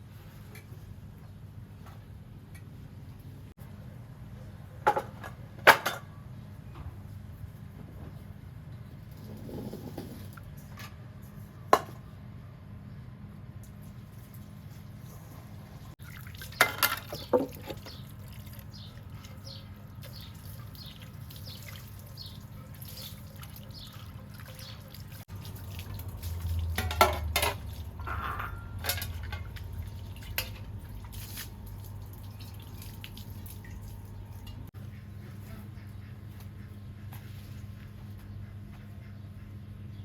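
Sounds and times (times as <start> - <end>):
water dripping and splashing: 16.0 - 28.1, 28.8 - 34.7
steady low hum: 25.2 - 40.0.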